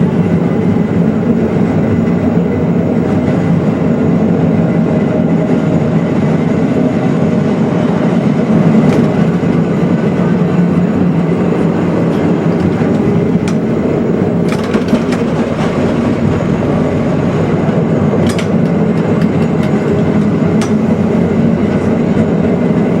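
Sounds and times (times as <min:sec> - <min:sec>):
streetcar rumbling on rails: 0:00.0 - 0:23.0
wheels clacking on track: 0:05.1 - 0:23.0.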